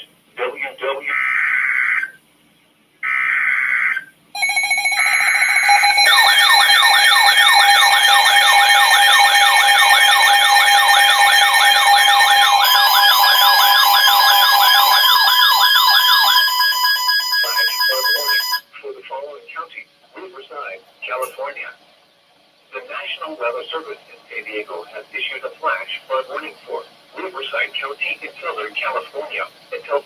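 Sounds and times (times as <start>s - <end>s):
screechy data bursts: 3.0s - 18.6s
emergency alert tones: 4.4s - 18.7s.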